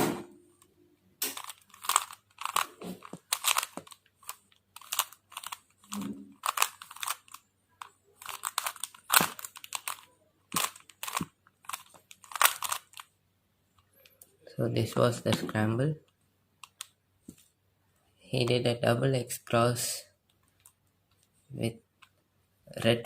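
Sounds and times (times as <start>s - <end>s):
plastic puzzle cube clicking: 1.2s - 13.1s, 16.6s - 16.9s.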